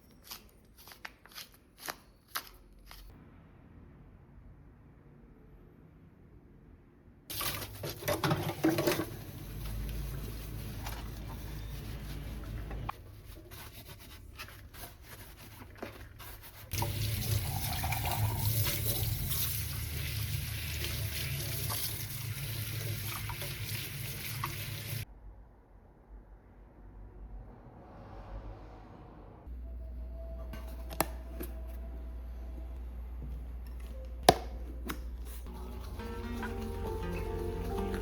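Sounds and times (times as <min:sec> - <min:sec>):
tap water running into sink: 0:16.8 - 0:25.0.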